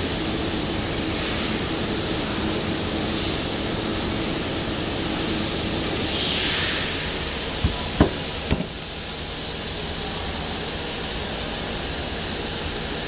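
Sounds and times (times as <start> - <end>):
sharp machine knocks: 7.6 - 8.8.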